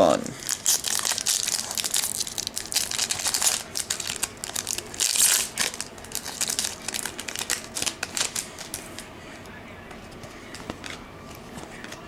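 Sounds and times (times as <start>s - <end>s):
card pack wrappers crinkling: 0.0s - 9.1s
cards being handled: 3.0s - 9.1s, 9.9s - 12.0s.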